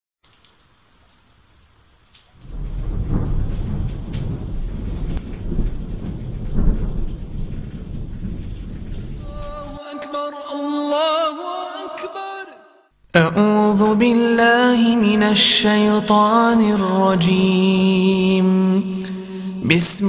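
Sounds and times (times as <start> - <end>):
rain hiss: 0.2 - 9.8, 18.8 - 20.0
rolling thunder rumble: 2.4 - 9.8
person chanting held notes: 9.2 - 12.6.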